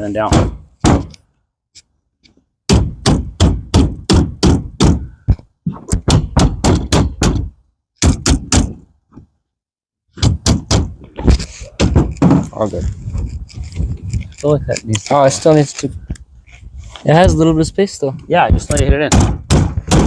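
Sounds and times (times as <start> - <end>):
rubber mallet thuds: 0.3 - 1.2, 2.7 - 8.8, 18.5 - 20.0.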